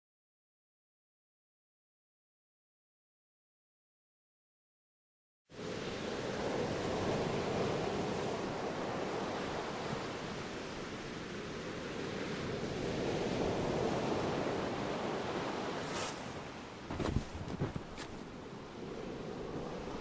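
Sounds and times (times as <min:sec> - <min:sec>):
waves breaking: 0:05.6 - 0:20.0.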